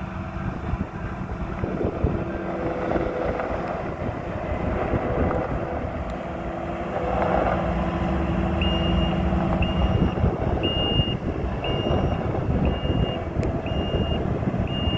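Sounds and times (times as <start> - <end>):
diesel engine running: 0.0 - 14.9
backup alarm beeping: 8.5 - 14.9.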